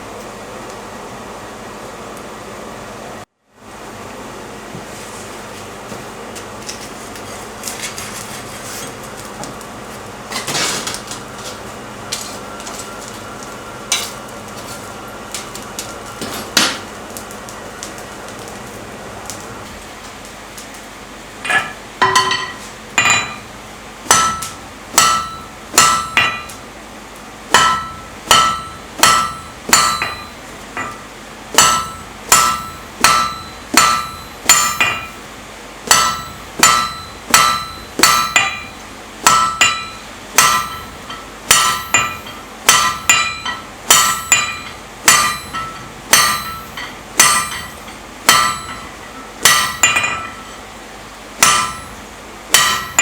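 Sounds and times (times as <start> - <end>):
hammer striking steel on anvil: 13.9 - 14.2, 21.4 - 23.5, 24.1 - 26.6, 27.5 - 35.3, 35.9 - 50.7, 51.4 - 53.0.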